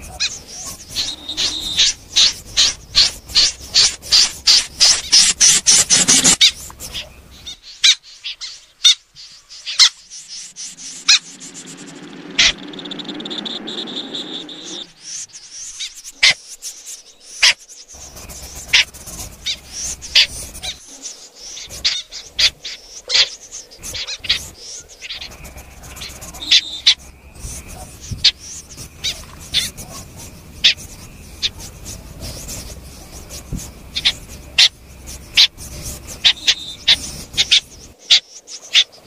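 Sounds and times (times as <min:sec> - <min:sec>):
rough steady sound with whistle: 0:00.0 - 0:06.4, 0:09.8 - 0:16.1, 0:25.2 - 0:38.0
snipe calling: 0:00.0 - 0:39.0.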